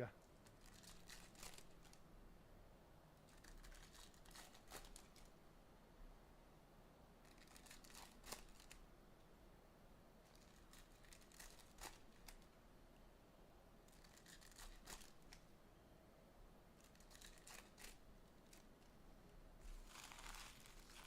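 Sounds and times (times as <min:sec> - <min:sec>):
wrapper crinkling and tearing: 0:00.4 - 0:02.0, 0:03.3 - 0:05.3, 0:07.3 - 0:08.8, 0:10.3 - 0:12.5, 0:13.9 - 0:15.4, 0:16.8 - 0:18.7, 0:19.6 - 0:21.0.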